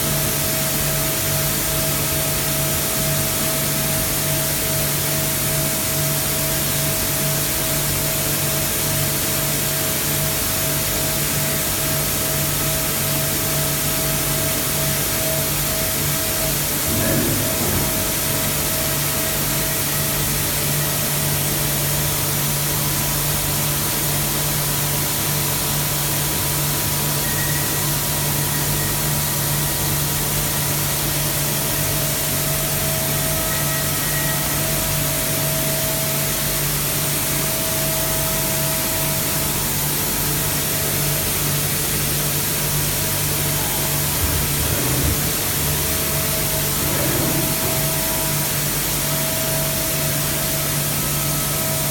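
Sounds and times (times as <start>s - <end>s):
machining center running: 14.2s - 21.2s, 41.8s - 51.6s.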